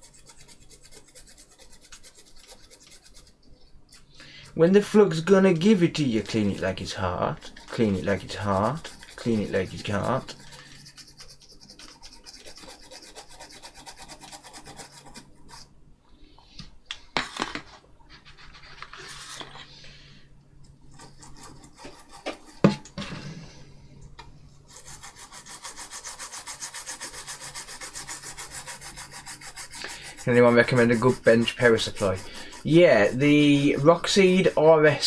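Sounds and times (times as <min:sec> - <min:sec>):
brush scrubbing circuit board: 0:00.0 - 0:03.3, 0:04.0 - 0:15.7, 0:21.0 - 0:22.7, 0:24.7 - 0:35.0.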